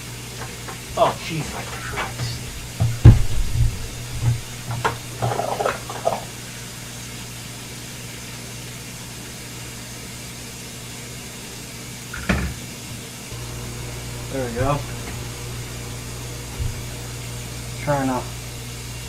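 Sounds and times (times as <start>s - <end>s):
low hum: 0.0s - 6.3s, 13.3s - 19.0s
running water hiss: 0.0s - 19.0s
knock: 2.8s - 5.0s.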